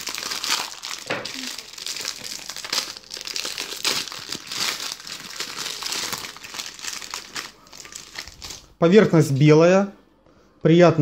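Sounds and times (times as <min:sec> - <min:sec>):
packaging crinkling: 0:00.0 - 0:08.7.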